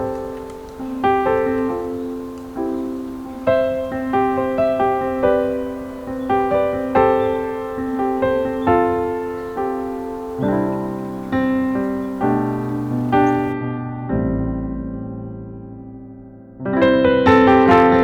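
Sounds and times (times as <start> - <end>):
gentle solo piano: 0.0 - 18.0.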